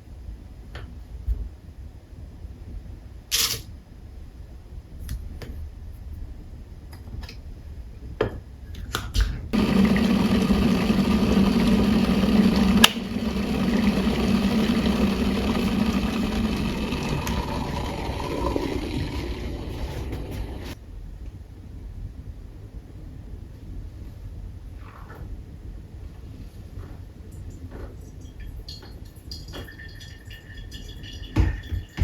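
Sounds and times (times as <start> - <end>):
small motor humming: 9.6 - 20.8.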